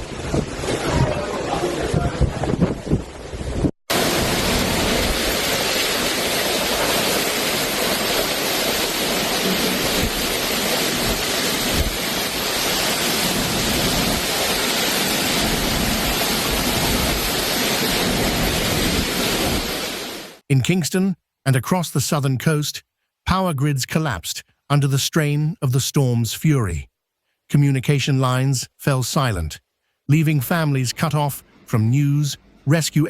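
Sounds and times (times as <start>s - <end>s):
strong wind: 0.0s - 20.3s
heavy rain: 0.0s - 20.4s.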